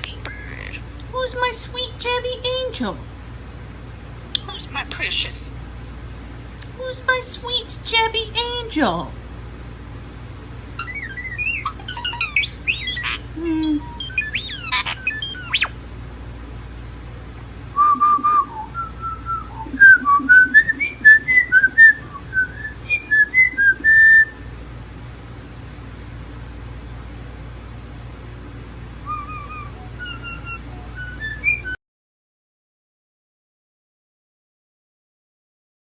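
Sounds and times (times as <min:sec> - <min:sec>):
starling whistling and chirping: 0:00.0 - 0:00.9, 0:10.8 - 0:15.8, 0:18.0 - 0:24.4, 0:29.0 - 0:31.8.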